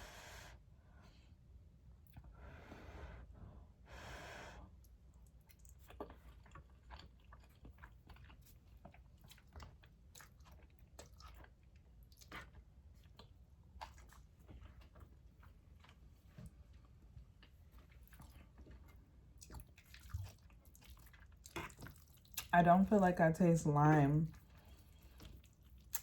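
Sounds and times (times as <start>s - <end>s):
breaths or sniffs: 2.3s - 4.7s
chewing soft noodles: 4.6s - 22.6s, 24.3s - 26.0s.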